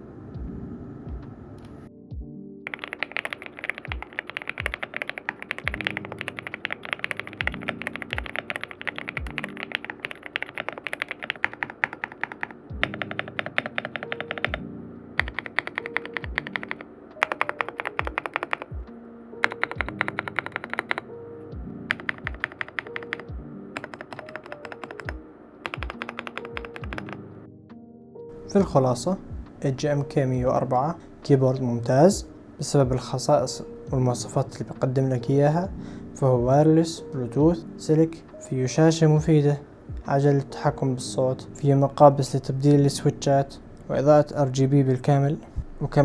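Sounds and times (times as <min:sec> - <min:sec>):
background music with steady beat: 0:00.0 - 0:46.0
mechanical keyboard typing: 0:02.7 - 0:18.8, 0:19.4 - 0:21.1, 0:21.9 - 0:27.2.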